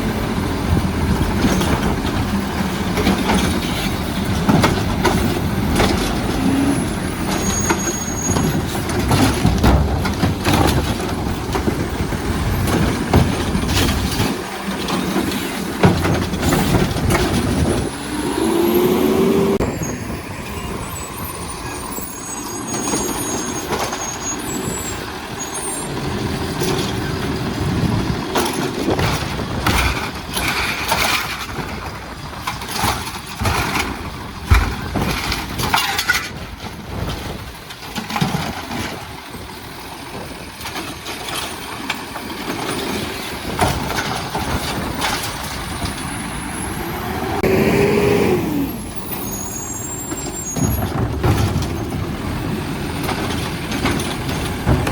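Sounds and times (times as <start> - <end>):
diesel engine running: 0.0 - 54.9
clanks and bangs of bin arm: 7.2 - 17.9, 32.5 - 39.1, 50.6 - 54.9
rising and falling pitch: 18.0 - 20.5, 46.4 - 49.0.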